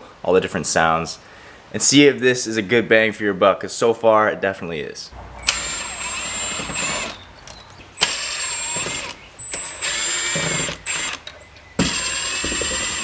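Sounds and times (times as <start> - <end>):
cordless drill whining: 5.4 - 13.0.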